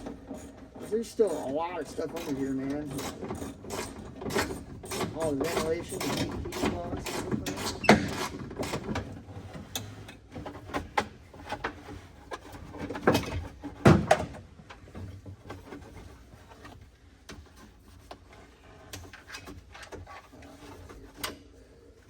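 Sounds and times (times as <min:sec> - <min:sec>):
hand tools clicking and rattling: 0:00.0 - 0:09.1.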